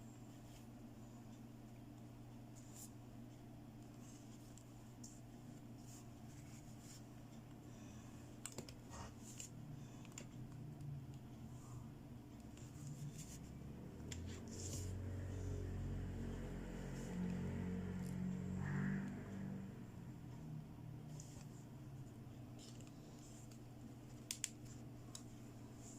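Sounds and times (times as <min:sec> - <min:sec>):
low hum: 0:09.4 - 0:25.9.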